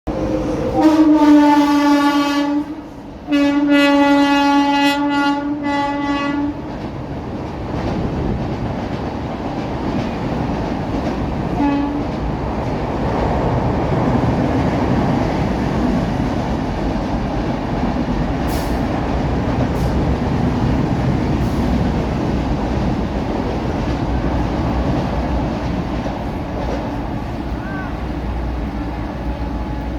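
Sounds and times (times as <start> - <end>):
train horn blasts: 0.1 - 6.7, 11.5 - 12.2
train rumble and wheel clatter: 0.1 - 29.9.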